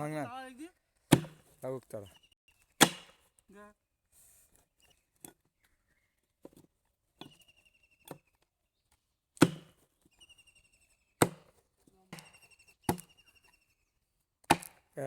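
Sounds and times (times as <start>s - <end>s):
blade chopping into tree trunk: 1.1s - 1.5s, 2.8s - 3.3s, 9.4s - 9.8s, 11.2s - 11.6s, 12.9s - 13.1s, 14.4s - 14.9s.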